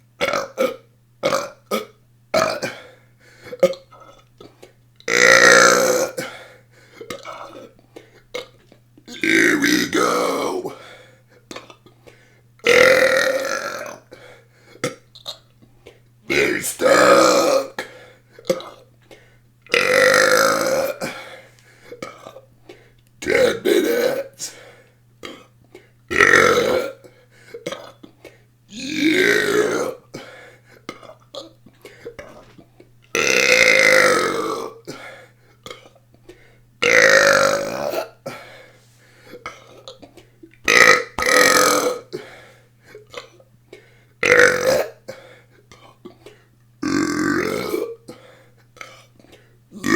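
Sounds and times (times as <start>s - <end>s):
person burping: 0.2s - 2.9s, 5.1s - 6.4s, 8.4s - 10.8s, 12.6s - 14.1s, 16.3s - 18.9s, 19.7s - 21.4s, 22.0s - 22.5s, 23.2s - 24.6s, 26.1s - 27.0s, 27.6s - 30.2s, 33.2s - 35.1s, 36.8s - 38.4s, 39.4s - 42.3s, 44.2s - 45.2s, 46.8s - 48.2s.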